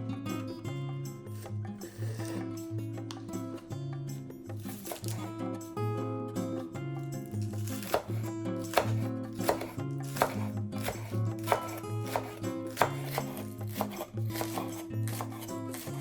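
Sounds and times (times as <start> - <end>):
background music: 0.0 - 16.0
knife chopping on cutting board: 4.6 - 5.3, 7.3 - 16.0.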